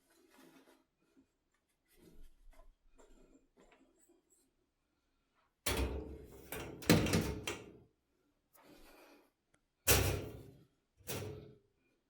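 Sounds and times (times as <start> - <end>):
items rustling and scraping: 0.0 - 4.6.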